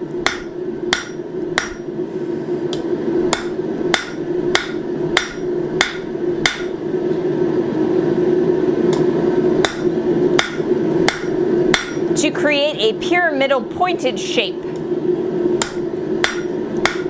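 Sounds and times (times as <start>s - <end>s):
steady hum: 0.0s - 17.0s
hammer striking steel on anvil: 0.2s - 1.9s, 3.3s - 6.8s, 9.6s - 12.1s, 15.6s - 17.0s.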